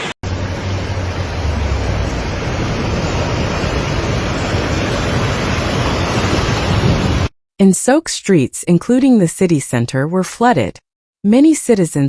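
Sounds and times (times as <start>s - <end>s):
loud rush of water: 0.0s - 7.3s
low rumble: 0.2s - 7.3s.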